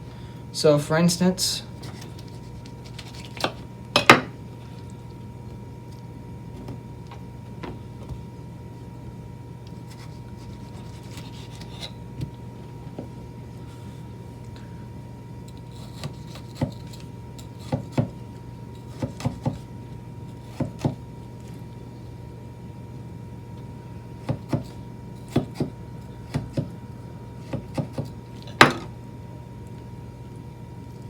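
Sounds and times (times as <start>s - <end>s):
steady low hum: 0.0s - 31.0s
knife chopping on cutting board: 15.8s - 18.2s, 18.9s - 19.6s, 20.4s - 21.0s, 24.2s - 26.7s, 27.4s - 28.9s.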